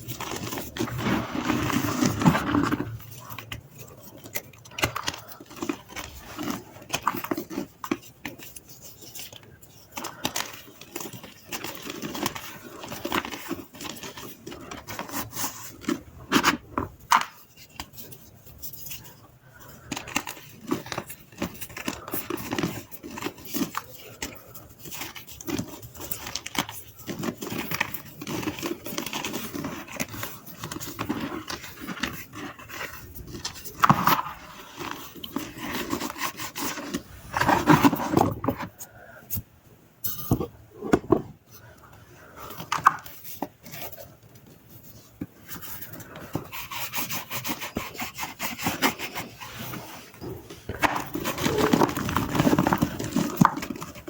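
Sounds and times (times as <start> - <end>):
dry chalk crunching: 42.6 - 54.0.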